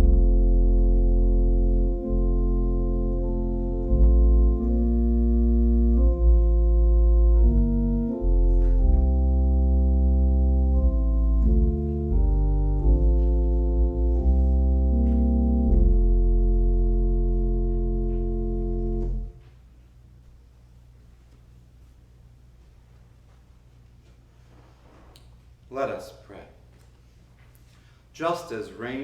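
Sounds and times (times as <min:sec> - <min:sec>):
organ playing slow chords: 0:00.0 - 0:19.5.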